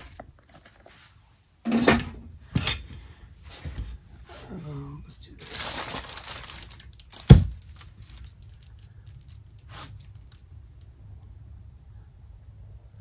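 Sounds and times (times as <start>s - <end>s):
wax paper crinkling: 5.3s - 10.4s.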